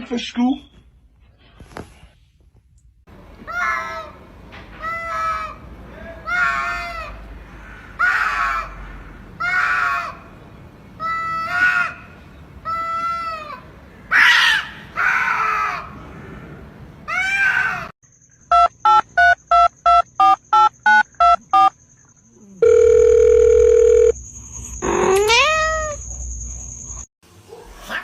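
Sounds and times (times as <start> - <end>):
telephone keypad beeps: 18.5 - 21.7, 22.6 - 24.1.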